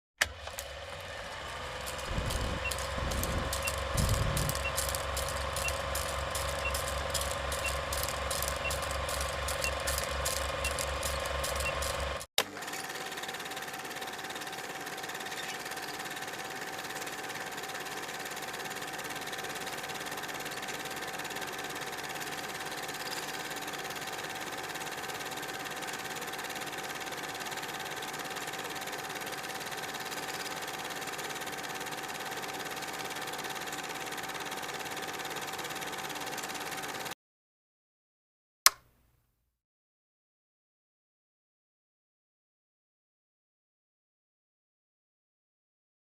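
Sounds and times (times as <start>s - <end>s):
film projector whirring: 0.2s - 37.2s
constant hum: 1.9s - 12.2s.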